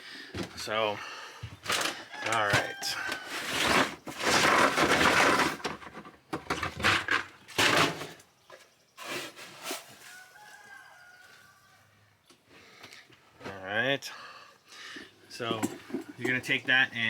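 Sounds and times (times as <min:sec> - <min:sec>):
drawn-out chicken call: 0:01.9 - 0:04.0, 0:09.9 - 0:12.0.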